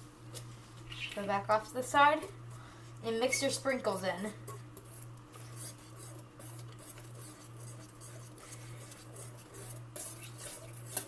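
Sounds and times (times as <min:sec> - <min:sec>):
whisk scraping bowl: 0:03.0 - 0:11.0.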